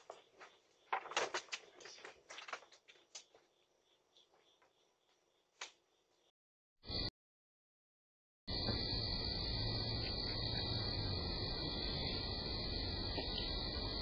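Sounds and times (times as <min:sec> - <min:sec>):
faint clicks and rustles: 0:00.0 - 0:04.8.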